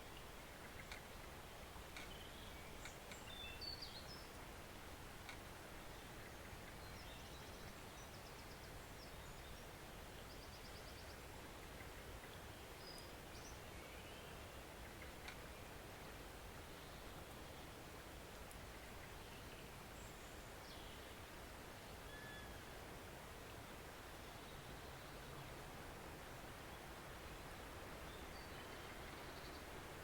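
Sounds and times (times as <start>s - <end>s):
faint woodland stream flowing: 0.0s - 30.0s
small birds chirping and trilling: 2.0s - 4.4s.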